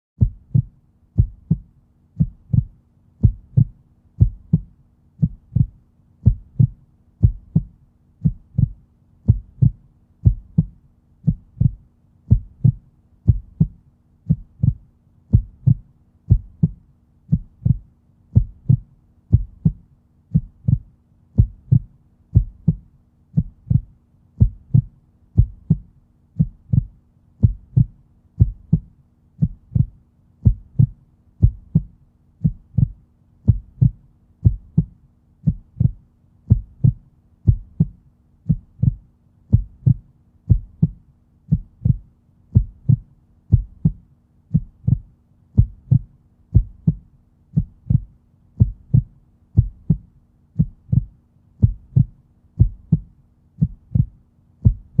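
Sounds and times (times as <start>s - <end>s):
faint steady hum: 0.2s - 55.0s
heartbeat lub-dub: 0.2s - 55.0s.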